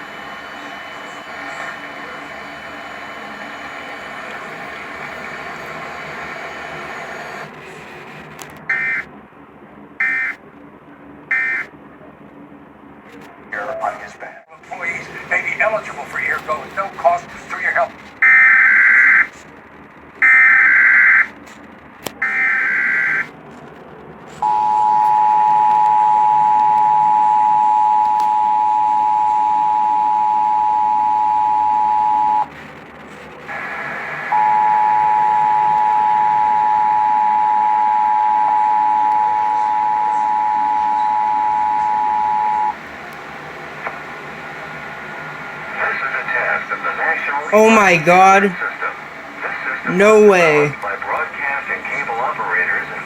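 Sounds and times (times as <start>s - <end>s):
two-tone attention signal: 34.4s - 42.8s.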